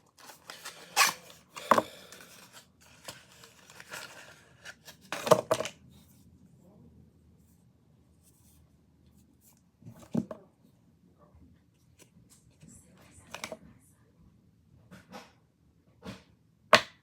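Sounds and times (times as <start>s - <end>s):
packaging rustling: 0.0s - 5.7s.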